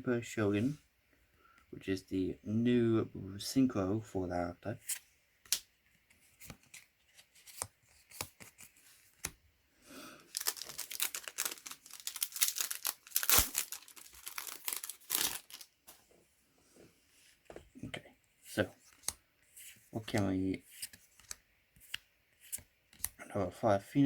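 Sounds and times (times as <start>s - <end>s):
foil pack crinkling and tearing: 10.3s - 15.7s.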